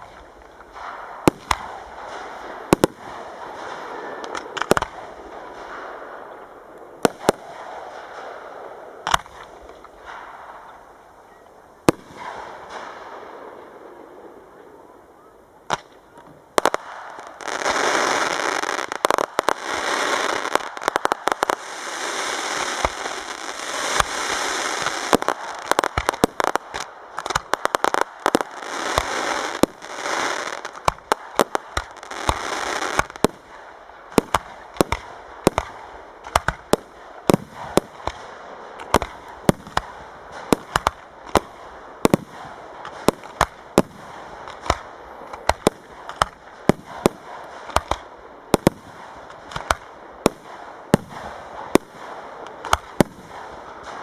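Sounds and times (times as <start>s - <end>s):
sharp firework bangs: 0.0s - 10.9s, 11.9s - 13.5s, 16.6s - 54.0s
fireworks crackling and hissing: 0.0s - 54.0s.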